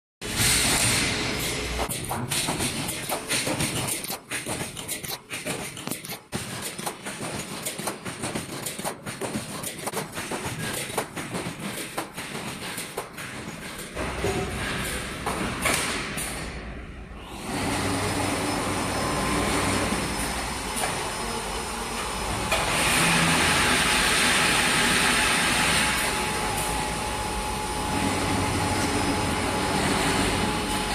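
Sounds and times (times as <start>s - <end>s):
welding machine clattering: 0.2s - 16.4s
welding machine running: 17.3s - 30.9s.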